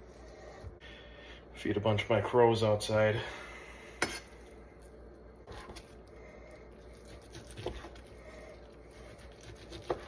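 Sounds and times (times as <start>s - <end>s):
knife cutting raw meat: 6.9s - 10.0s.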